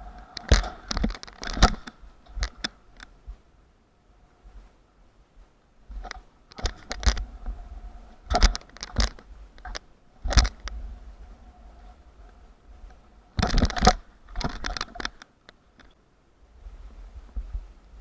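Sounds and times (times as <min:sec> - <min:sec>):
skateboard rolling rumble: 0:00.0 - 0:00.9, 0:07.0 - 0:08.4, 0:09.2 - 0:14.4.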